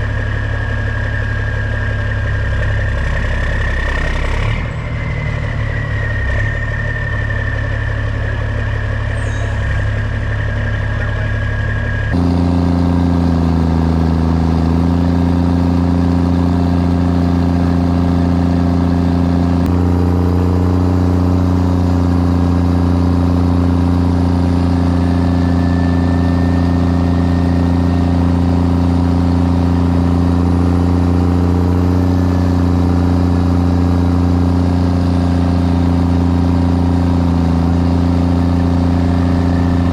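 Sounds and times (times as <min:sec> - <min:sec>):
truck diesel engine running: 0:00.0 - 0:39.9
faint high whine: 0:04.7 - 0:12.5.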